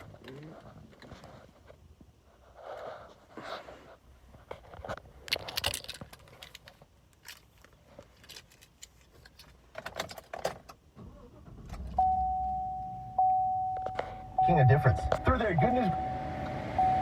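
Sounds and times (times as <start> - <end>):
small clicks and rustles: 4.3 - 10.8
keys jangling: 5.3 - 6.6.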